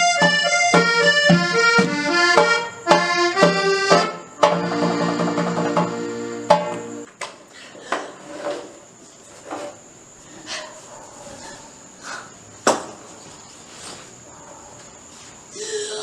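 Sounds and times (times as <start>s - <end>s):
sharp knocks: 0.2s - 7.1s.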